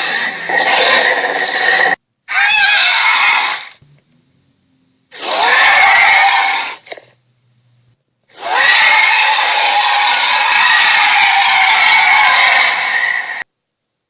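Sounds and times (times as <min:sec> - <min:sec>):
creature roars: 0:00.0 - 0:03.7, 0:05.2 - 0:06.8, 0:08.4 - 0:13.4.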